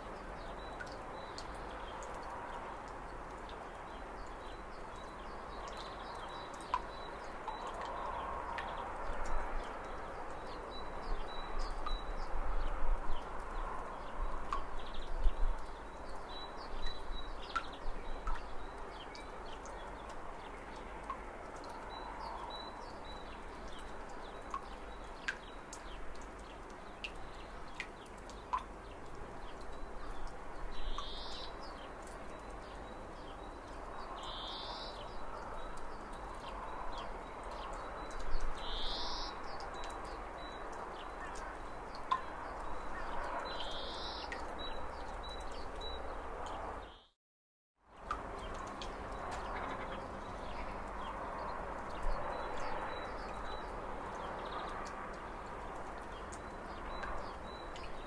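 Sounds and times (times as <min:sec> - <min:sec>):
faint high chirps and clicks: 0:15.6 - 0:21.9, 0:29.5 - 0:33.0.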